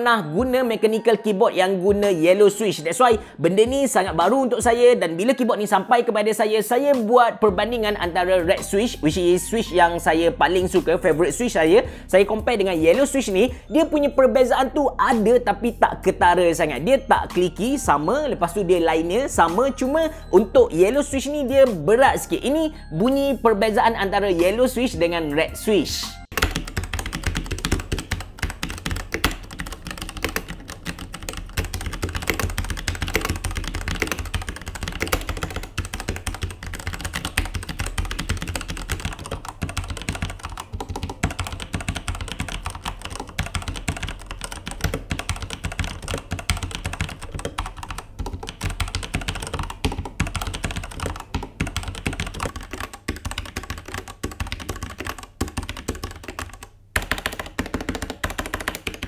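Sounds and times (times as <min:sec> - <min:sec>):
typing on mechanical keyboard: 0:26.3 - 0:59.0.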